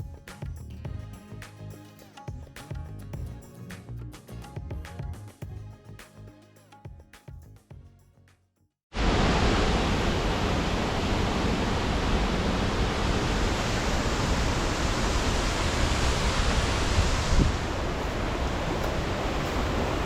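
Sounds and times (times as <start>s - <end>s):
waterfall rushing: 9.0s - 20.0s.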